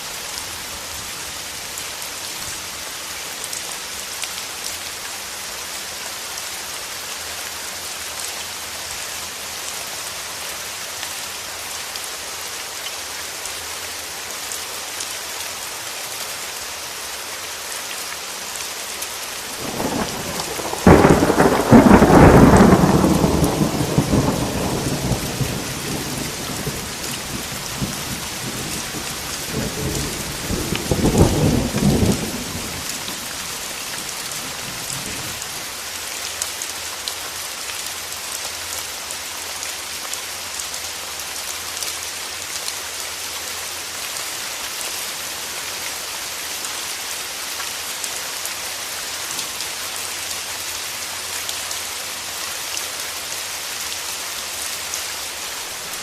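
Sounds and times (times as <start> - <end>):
heavy rain: 0.0 - 56.0
thunder cracking and rolling: 19.6 - 33.4.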